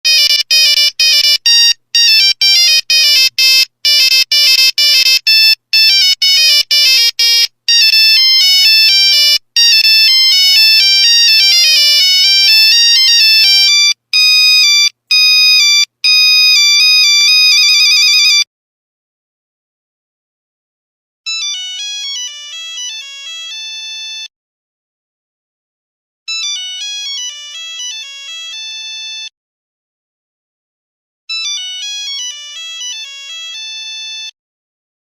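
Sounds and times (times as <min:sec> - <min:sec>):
mobile phone ringtone melodies: 0:00.1 - 0:18.5, 0:21.3 - 0:24.3, 0:26.3 - 0:29.3, 0:31.3 - 0:34.4.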